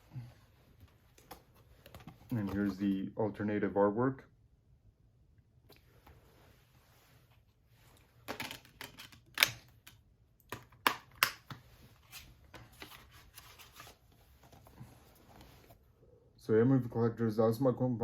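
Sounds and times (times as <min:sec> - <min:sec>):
soft rustling: 0:05.9 - 0:08.2, 0:11.6 - 0:15.9.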